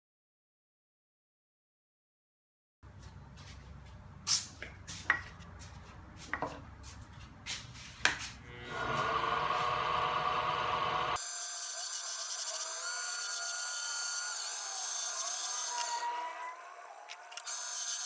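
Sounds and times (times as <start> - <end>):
objects knocking on workbench: 6.3 - 6.6
small power tool running: 8.5 - 18.0.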